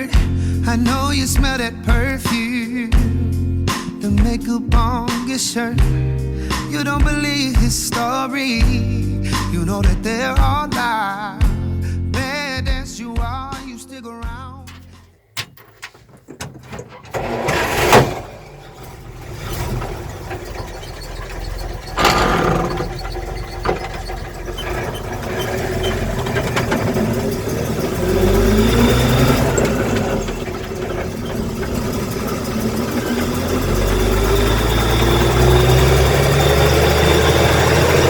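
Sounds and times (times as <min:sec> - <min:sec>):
engine cranking: 0:14.7 - 0:38.0
truck engine revving and idling: 0:14.7 - 0:38.0.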